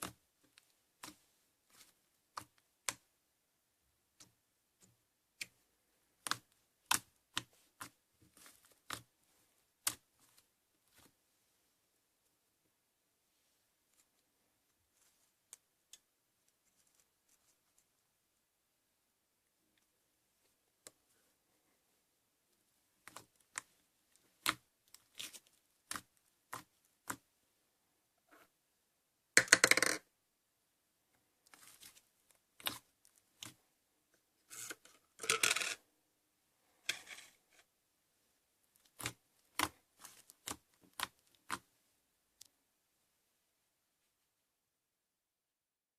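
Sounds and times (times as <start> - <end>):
slime squishing: 6.2 - 11.2, 23.0 - 27.3, 31.5 - 33.6, 38.7 - 41.7.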